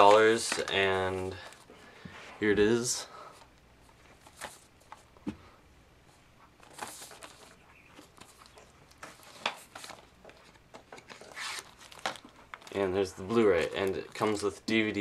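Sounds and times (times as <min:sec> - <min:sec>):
plastic packaging rustling: 0:06.5 - 0:14.7.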